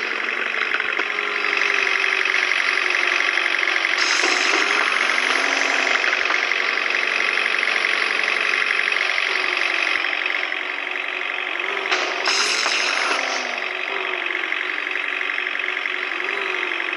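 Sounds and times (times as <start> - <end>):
diesel engine running: 0.0 - 16.9
brief noisy burst: 4.0 - 5.0, 11.9 - 13.6.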